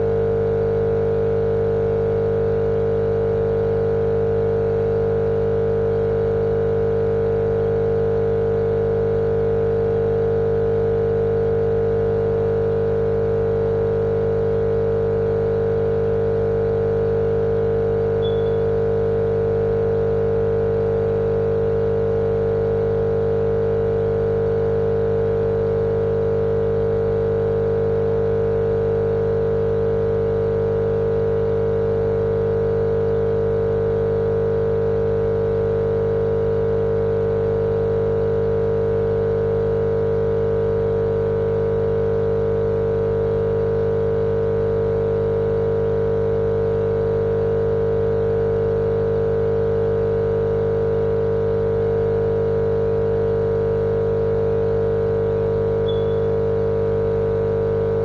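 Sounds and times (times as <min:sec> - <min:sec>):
machine-like hum: 0:18.1 - 0:19.2, 0:55.7 - 0:56.8.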